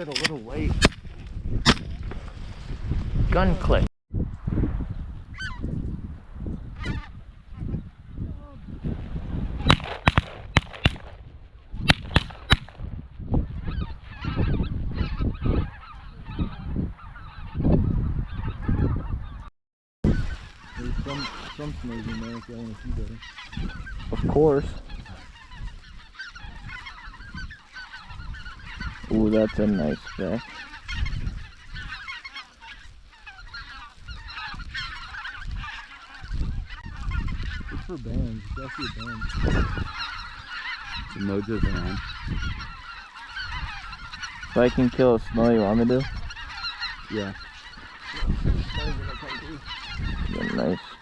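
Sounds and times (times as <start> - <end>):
geese calling: 0.0 - 0.7, 6.8 - 7.8, 9.6 - 11.2, 11.8 - 12.8, 13.5 - 19.5, 20.1 - 51.0
wind rumble on microphone: 0.0 - 51.0
shotgun shots: 9.7 - 11.2, 11.9 - 12.8.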